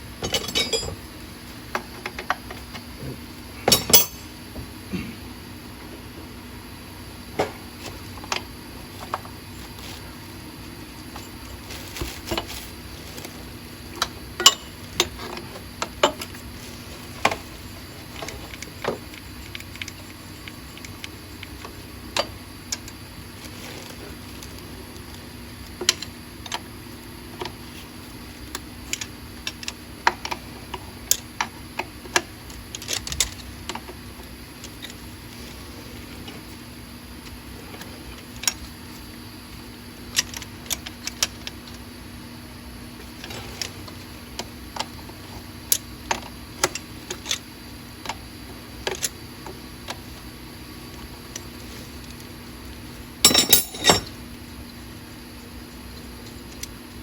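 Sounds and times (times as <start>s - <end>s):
steady low hum: 0.0s - 57.0s
metal tools clinking: 0.2s - 1.0s, 3.7s - 4.4s, 53.2s - 54.2s.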